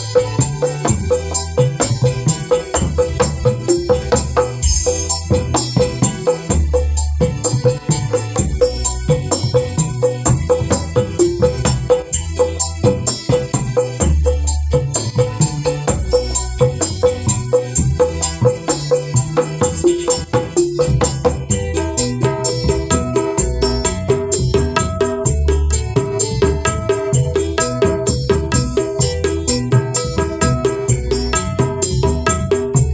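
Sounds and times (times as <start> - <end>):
deep bass notes: 0.0 - 32.9
hand drums playing fast rhythm: 0.0 - 32.9.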